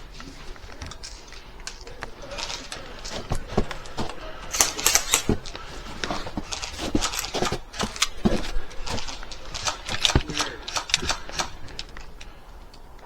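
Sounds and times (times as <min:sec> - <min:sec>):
pellets striking: 0:02.2 - 0:11.9
airsoft guns firing: 0:03.8 - 0:05.6, 0:06.5 - 0:12.2.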